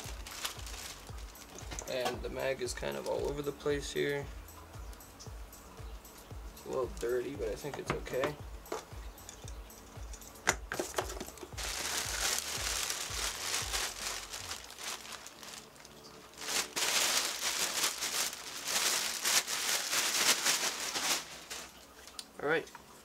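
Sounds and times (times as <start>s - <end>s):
packaging crinkling and rustling: 0.0s - 3.5s, 10.7s - 22.3s.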